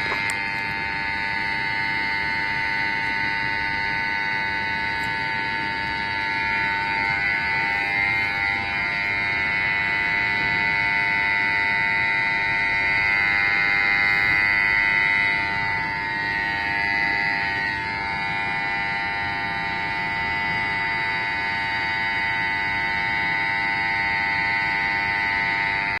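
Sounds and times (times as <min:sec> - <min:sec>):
alarm buzzer: 0:00.0 - 0:26.0.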